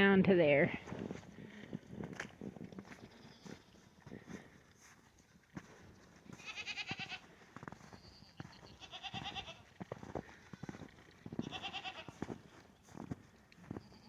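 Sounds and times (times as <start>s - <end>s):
goats bleating: 6.3s - 7.4s, 8.0s - 9.8s, 11.3s - 12.6s.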